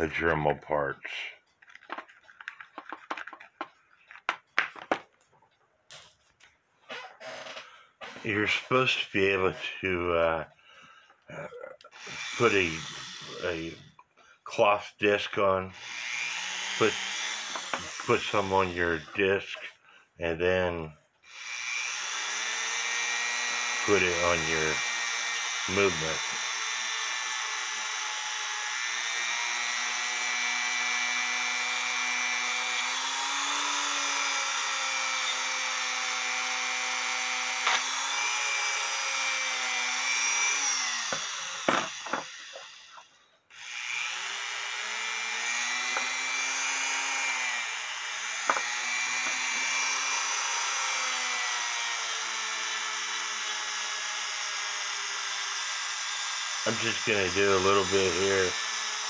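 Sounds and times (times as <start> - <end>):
rotary tool whining: 6.9 - 9.8, 11.9 - 14.0, 15.8 - 19.7, 21.2 - 59.0.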